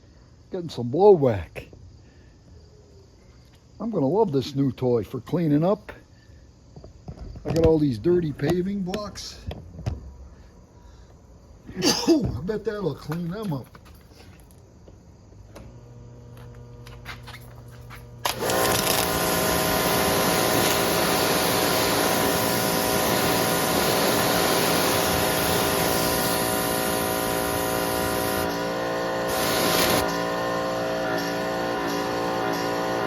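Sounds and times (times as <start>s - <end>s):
pressure washer pump whine: 15.6s - 33.0s
high-pressure water spray hiss: 18.3s - 33.0s.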